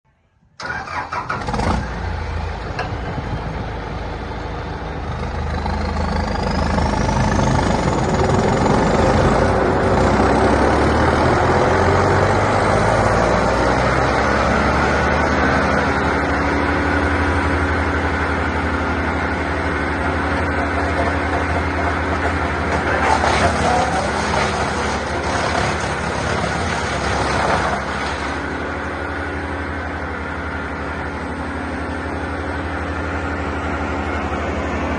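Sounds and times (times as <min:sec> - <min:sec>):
wood chipper diesel engine running: 0:00.6 - 0:34.9.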